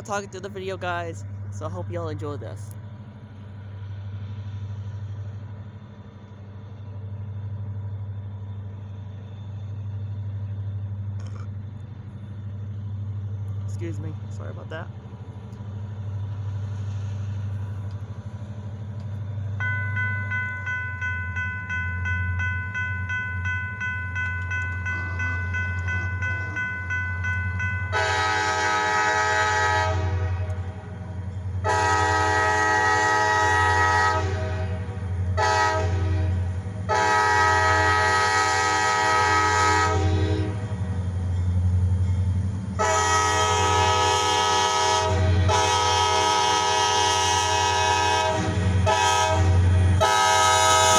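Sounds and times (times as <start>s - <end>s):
diesel locomotive engine rumble: 0.0s - 50.9s
locomotive bell ringing: 19.6s - 28.8s
locomotive air horn: 27.9s - 30.7s, 31.6s - 40.8s, 42.8s - 50.9s.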